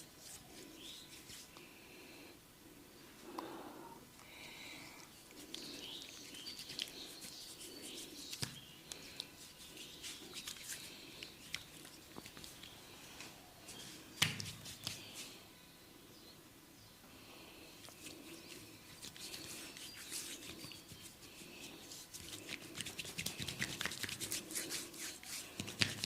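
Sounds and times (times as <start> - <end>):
hands rubbing oiled skin: 0.0 - 1.6, 5.1 - 12.8, 13.7 - 15.4, 17.8 - 26.0.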